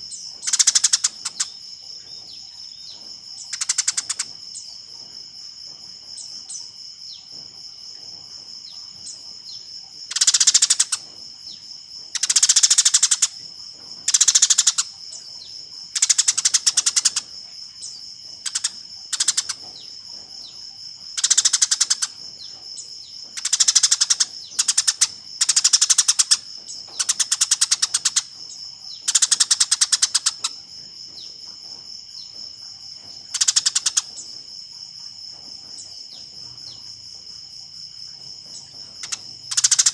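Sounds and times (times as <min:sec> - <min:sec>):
sparrows chattering: 0:00.0 - 0:04.8, 0:08.9 - 0:11.2, 0:12.1 - 0:20.6, 0:21.2 - 0:31.4, 0:33.1 - 0:34.4, 0:38.5 - 0:39.9.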